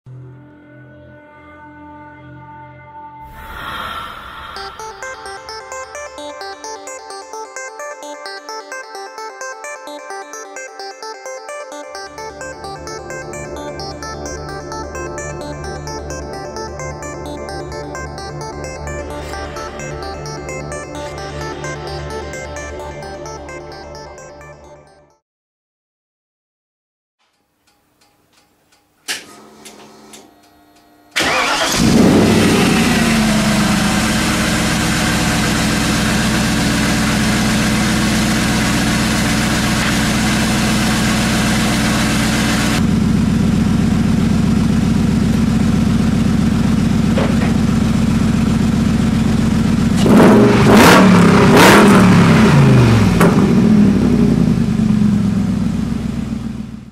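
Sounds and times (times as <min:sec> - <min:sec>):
car engine cranking and idling: 0:31.2 - 0:56.8
car engine revving: 0:31.2 - 0:56.8.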